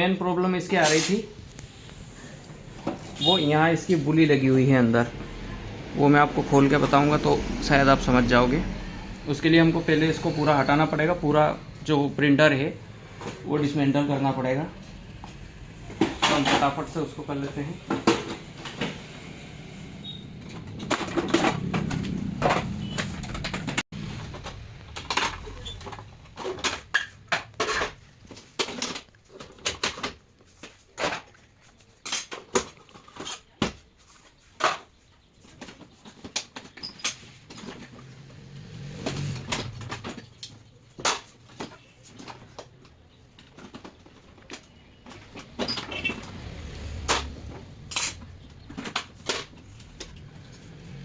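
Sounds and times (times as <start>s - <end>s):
plastic parts clicking and clattering: 20.4s - 38.1s, 39.0s - 50.6s.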